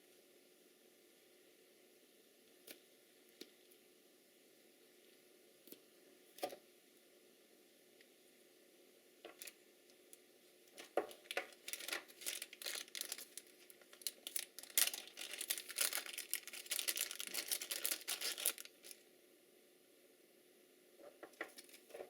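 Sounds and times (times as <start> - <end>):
packaging crinkling: 10.8 - 19.0, 21.4 - 22.0.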